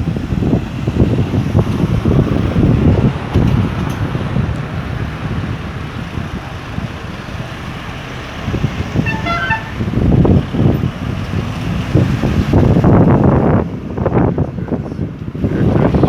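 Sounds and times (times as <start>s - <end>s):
street traffic rumbling: 0.0s - 16.0s
wind on microphone: 0.0s - 16.0s
car horn tooting: 9.0s - 10.0s.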